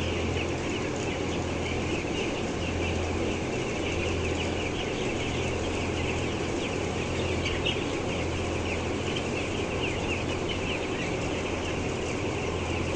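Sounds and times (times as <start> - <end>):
chickens peeping: 0.0 - 12.9.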